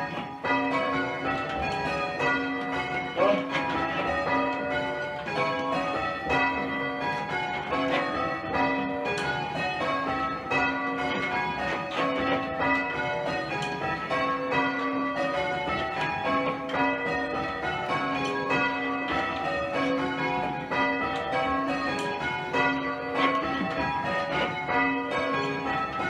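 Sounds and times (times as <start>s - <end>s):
church bells ringing in changes: 0.0s - 26.0s.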